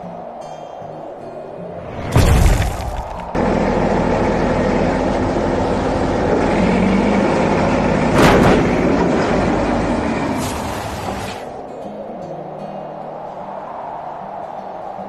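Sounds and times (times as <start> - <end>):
heavy vehicle engine running: 2.2 - 11.6.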